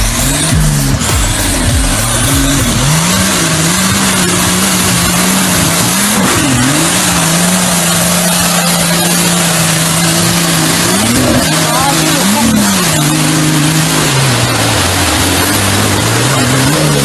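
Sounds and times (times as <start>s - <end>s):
engine at high revs: 0.0s - 17.0s
loud rushing noise: 0.0s - 17.0s.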